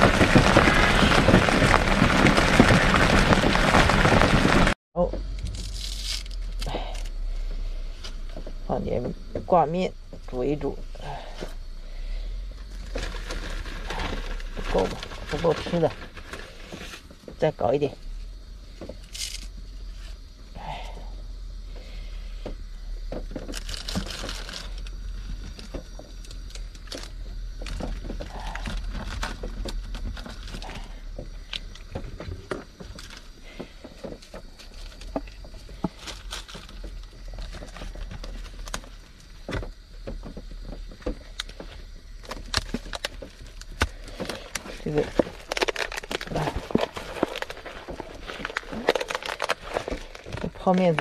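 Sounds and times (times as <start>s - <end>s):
food packets being handled: 12.6s - 17.1s, 23.2s - 51.0s.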